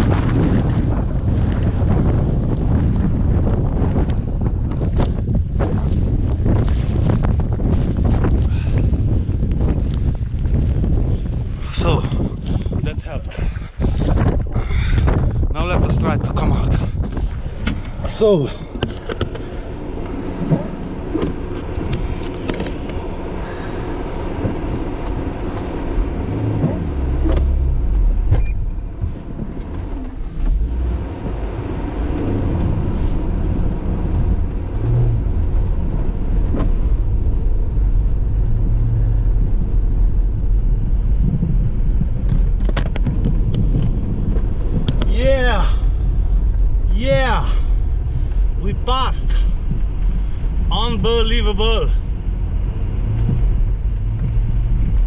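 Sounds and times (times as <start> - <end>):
knocks and crunches in snow: 0.0 - 14.4
car engine running under load: 0.0 - 55.0.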